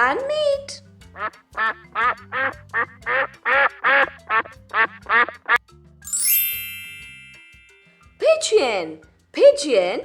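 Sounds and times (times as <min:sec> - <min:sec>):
light background music: 0:00.0 - 0:10.0
duck quacking: 0:01.2 - 0:05.6.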